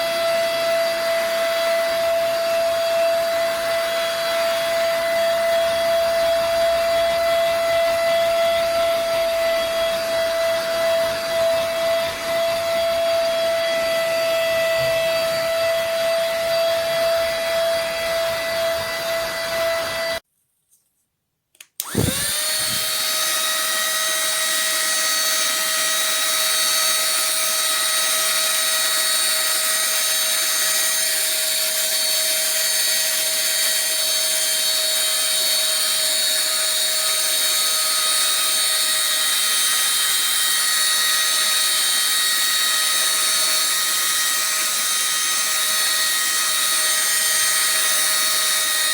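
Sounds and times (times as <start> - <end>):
handheld vacuum cleaner whine: 0.0 - 20.2, 21.8 - 48.9.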